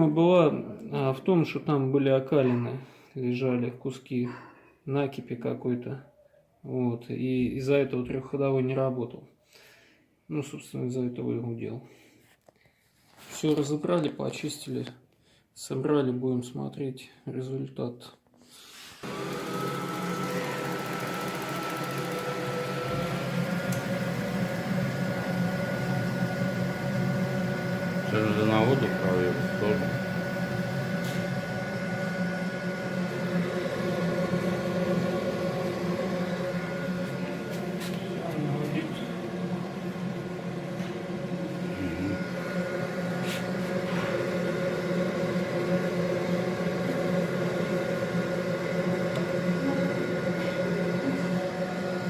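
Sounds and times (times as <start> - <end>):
gas boiler humming: 18.6 - 52.0.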